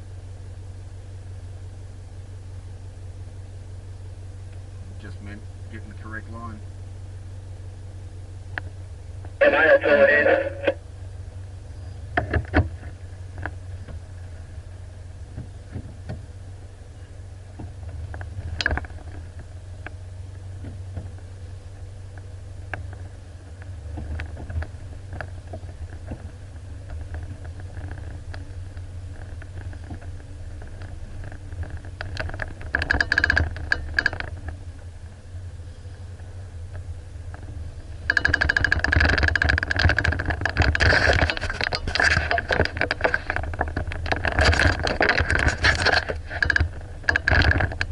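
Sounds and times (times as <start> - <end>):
vehicle engine low rumble: 0.0 - 47.9
sharp knocks and clicks: 12.1 - 14.0, 17.5 - 19.2, 22.7 - 34.6, 36.7 - 47.9
loud rattling and clattering: 24.0 - 34.6, 37.3 - 47.9.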